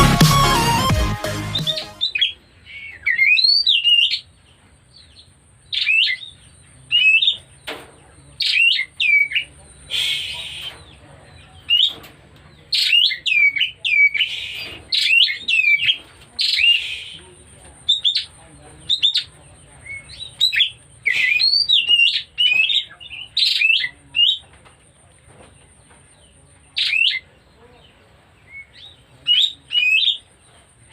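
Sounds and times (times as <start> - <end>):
bird singing whistled phrases: 12.8 - 17.2, 18.9 - 24.4.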